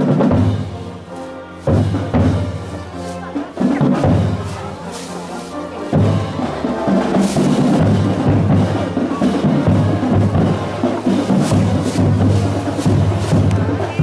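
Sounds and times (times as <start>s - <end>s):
drums and percussion music: 0.0s - 14.0s
repeated knocking strokes: 0.0s - 14.0s.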